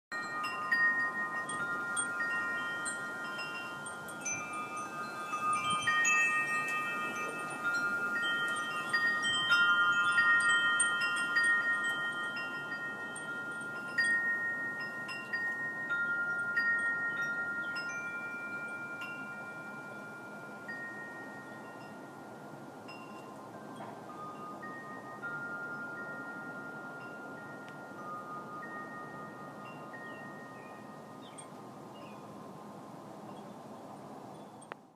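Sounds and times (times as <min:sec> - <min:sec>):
wind chimes ringing: 0:00.1 - 0:33.5.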